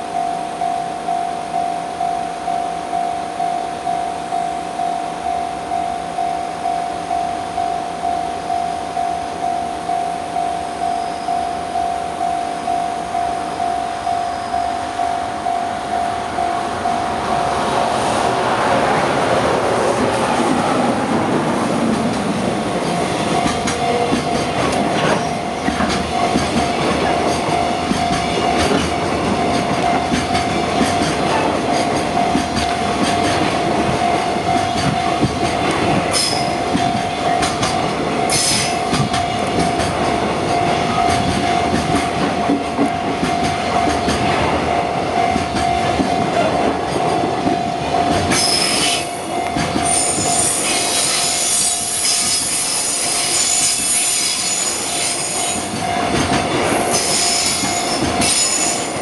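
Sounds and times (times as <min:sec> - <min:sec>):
steady high tone ringing: 0:00.0 - 0:59.0
train wheels clattering over rail joints: 0:19.4 - 0:59.0.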